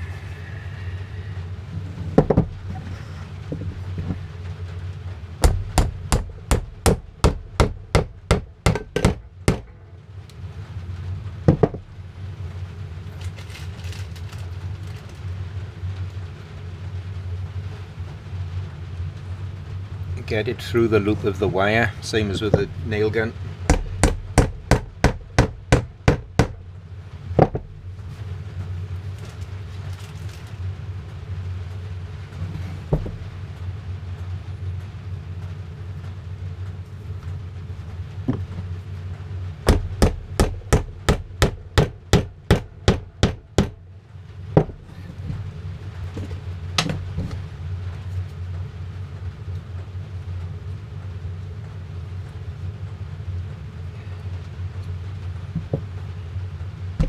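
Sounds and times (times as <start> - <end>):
hammer tapping nail into wood: 5.4 - 9.7, 23.7 - 26.6, 39.7 - 43.8.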